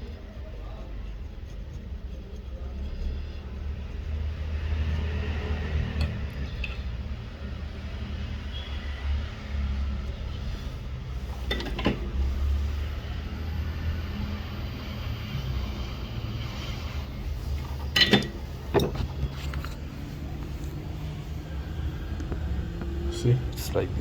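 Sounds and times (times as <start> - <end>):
small tools clicking and clinking: 17.5 - 19.8.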